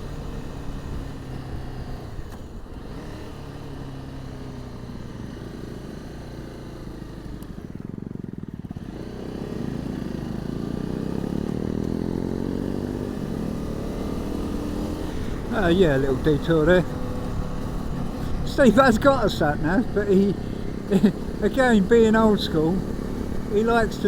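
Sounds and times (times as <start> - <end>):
motorcycle engine revving: 6.9 - 24.0.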